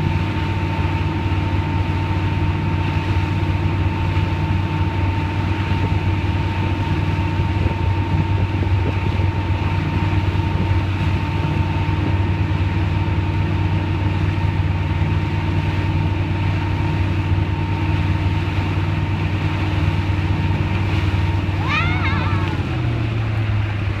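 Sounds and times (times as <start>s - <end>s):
boat engine running: 0.0s - 24.0s
wind and water rushing: 0.0s - 24.0s.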